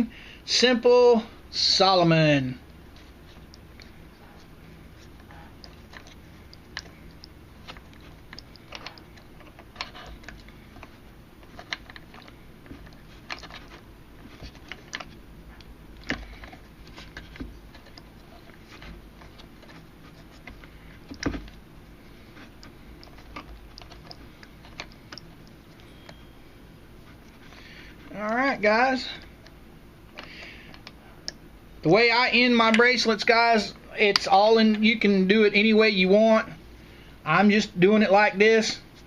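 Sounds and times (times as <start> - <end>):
faint steady hum: 0.0 - 39.0
cord clicking and rustling: 2.7 - 26.2.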